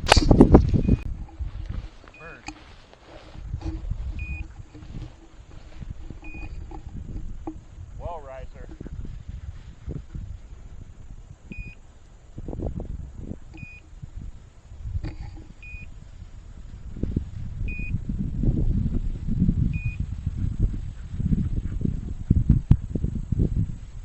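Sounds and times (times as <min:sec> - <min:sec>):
low rumbling and rustling: 0:00.0 - 0:24.0
short high electronic beeps: 0:02.2 - 0:02.4.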